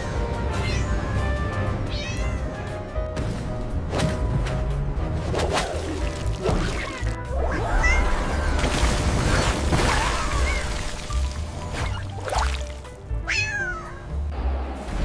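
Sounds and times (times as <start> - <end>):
cat meowing: 1.9 - 2.5, 7.5 - 8.4, 13.2 - 14.1.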